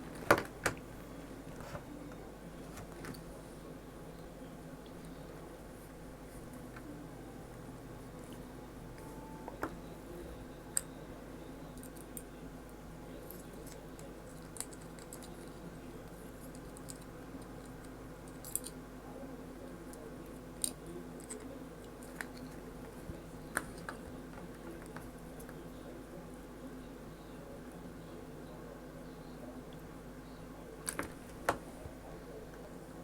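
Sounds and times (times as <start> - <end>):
faint steady hum: 0.0 - 33.0.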